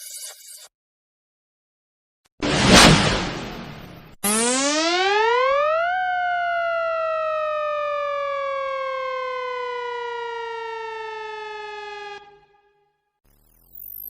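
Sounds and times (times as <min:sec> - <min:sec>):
buzzy siren-like tone sliding down: 0:04.2 - 0:12.6.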